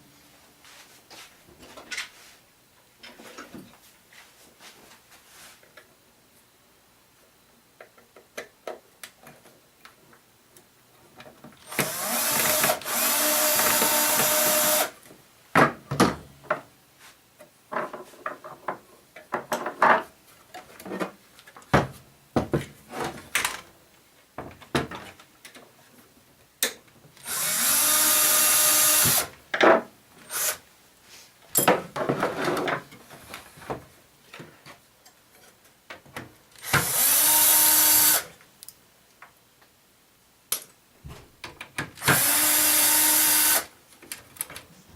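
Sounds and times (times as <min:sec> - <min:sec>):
electric screwdriver running: 0:11.7 - 0:14.9, 0:27.2 - 0:29.3, 0:36.6 - 0:38.2, 0:42.0 - 0:43.7.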